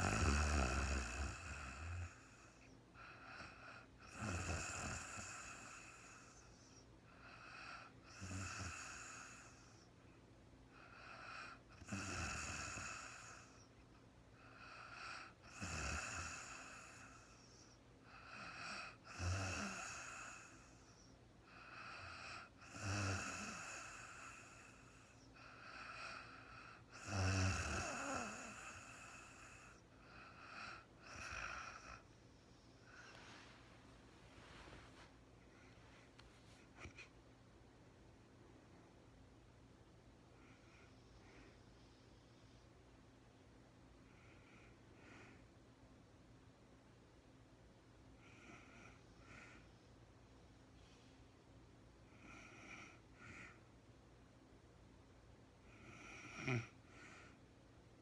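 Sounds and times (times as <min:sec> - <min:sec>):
woman snoring: 0:00.0 - 0:09.8, 0:10.9 - 0:13.7, 0:14.5 - 0:17.6, 0:18.2 - 0:21.0, 0:21.6 - 0:32.0, 0:55.8 - 0:57.2.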